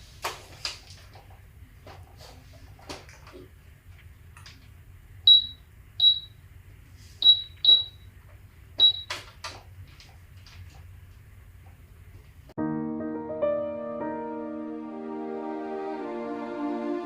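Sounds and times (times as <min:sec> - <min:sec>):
short high electronic beep: 0:05.3 - 0:06.3, 0:07.2 - 0:08.0, 0:08.8 - 0:09.0
keypad buttons clicking: 0:07.2 - 0:07.9, 0:08.8 - 0:09.2.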